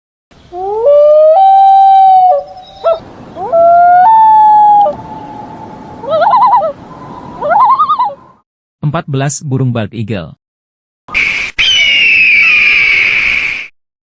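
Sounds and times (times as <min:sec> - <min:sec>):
loon wailing: 0:00.5 - 0:08.3
loon tremolo call: 0:00.6 - 0:08.2.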